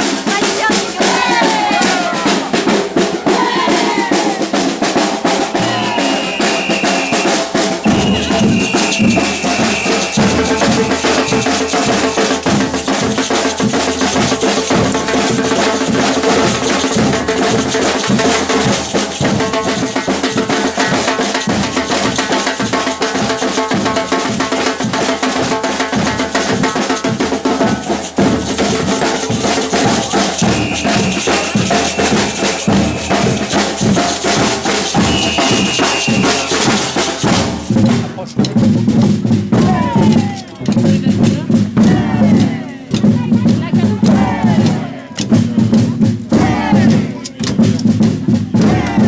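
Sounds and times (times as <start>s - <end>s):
samba percussion band: 0.0s - 49.0s
long high tone: 5.6s - 12.2s, 29.8s - 34.0s.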